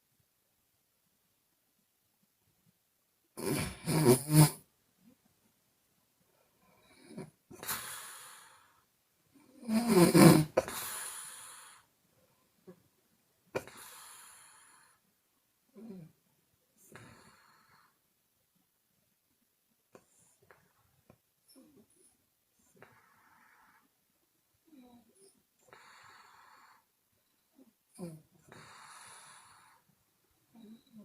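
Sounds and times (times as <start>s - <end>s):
woman snoring: 3.4s - 4.7s, 9.4s - 11.9s, 27.9s - 29.9s, 30.6s - 31.0s.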